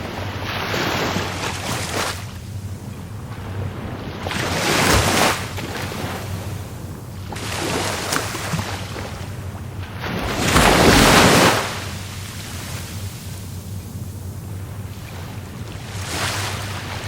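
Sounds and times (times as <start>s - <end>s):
waves breaking: 0.0s - 17.0s.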